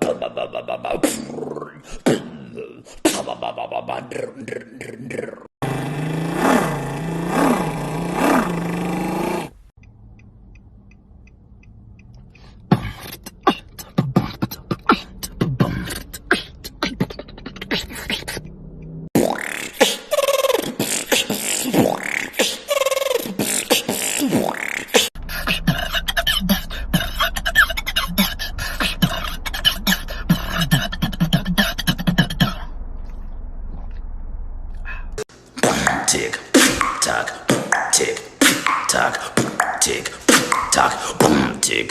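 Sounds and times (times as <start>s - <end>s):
beatboxing: 0.0s - 9.5s, 12.4s - 18.4s, 19.2s - 32.7s, 35.5s - 41.9s
fast mouth clicks: 11.6s - 27.2s, 34.8s - 41.8s
wavering vocal bass tone: 12.7s - 18.7s, 20.1s - 32.8s, 34.8s - 41.9s.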